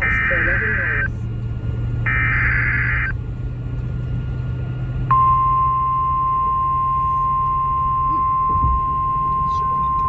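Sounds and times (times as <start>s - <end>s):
steady piercing alarm beep: 2.1s - 3.1s, 5.1s - 10.0s
low steady hum: 5.1s - 10.0s.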